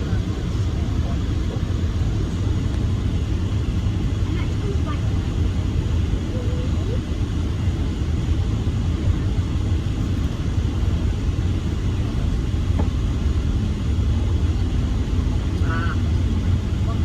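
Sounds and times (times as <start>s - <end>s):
bus engine and road noise: 0.0s - 17.0s.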